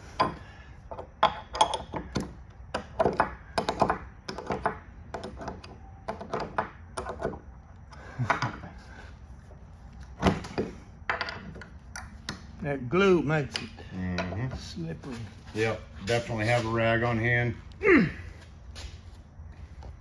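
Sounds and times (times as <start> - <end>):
clamps and tools knocking: 0.2 - 7.4.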